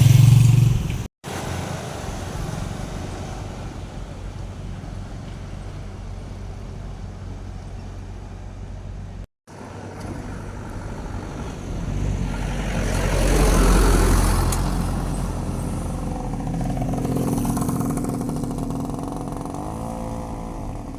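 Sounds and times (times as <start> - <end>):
road traffic rumble: 0.0 - 20.9
vehicle passing close: 9.5 - 20.9.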